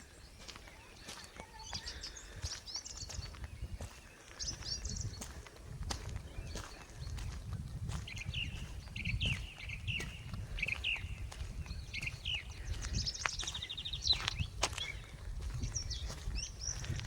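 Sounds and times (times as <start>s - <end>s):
songbirds chirping: 0.0s - 17.0s
footsteps clicking: 0.4s - 17.0s.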